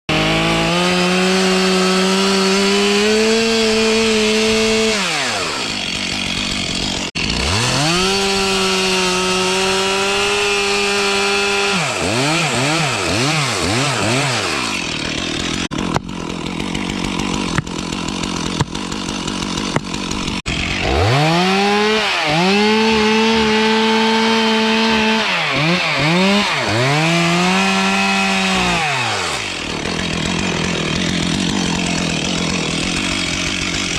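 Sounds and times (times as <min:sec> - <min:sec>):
chainsaw revving: 0:00.1 - 0:33.9
sharp knocks: 0:18.5 - 0:18.8.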